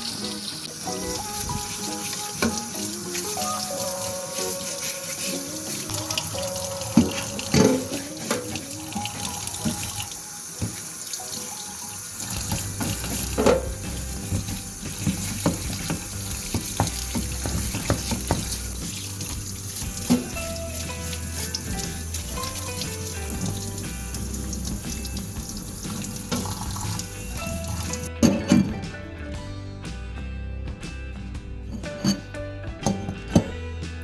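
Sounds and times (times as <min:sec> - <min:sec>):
tap water running into sink: 0:00.0 - 0:28.8
knocks and clinks against sink: 0:06.9 - 0:10.9, 0:12.2 - 0:29.0, 0:31.7 - 0:33.6.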